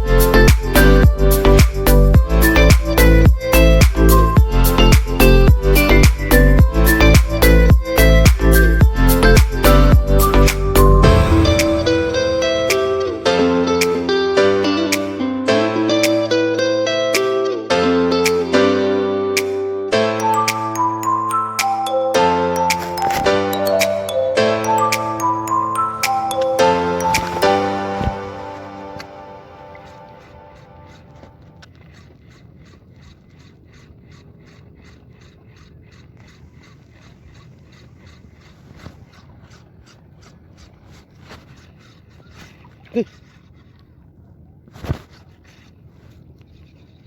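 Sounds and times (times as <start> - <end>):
light ticking beat: 0.0 - 11.9
low rumble: 0.0 - 13.8
plucked guitar chords: 10.2 - 25.2.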